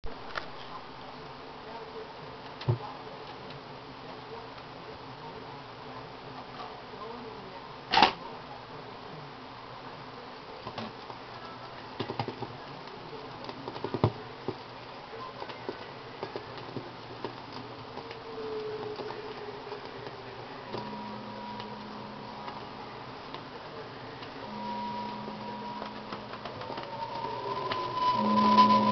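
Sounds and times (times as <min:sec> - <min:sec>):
record surface hiss: 0:00.0 - 0:28.9
faint steady tone: 0:17.8 - 0:28.9.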